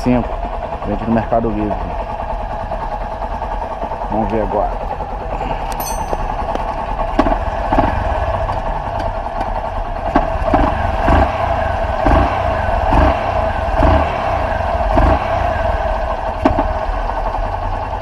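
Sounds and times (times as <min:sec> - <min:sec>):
motorcycle engine idling: 0:00.0 - 0:10.5.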